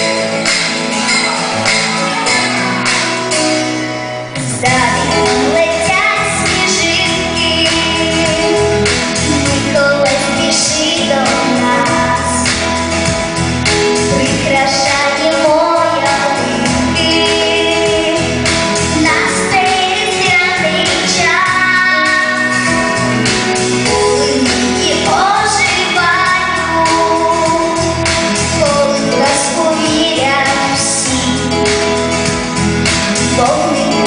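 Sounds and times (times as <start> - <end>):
instrumental backing track: 0.0 - 34.0
woman singing blues: 4.5 - 12.6, 14.1 - 31.8, 33.3 - 34.0.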